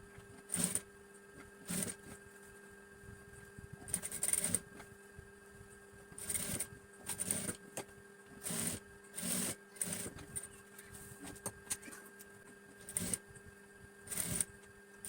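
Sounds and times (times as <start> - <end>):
sewing machine stitching: 0.5 - 0.8, 1.6 - 2.2, 3.9 - 4.7, 6.2 - 7.6, 8.4 - 10.4, 12.8 - 13.2, 14.1 - 14.5.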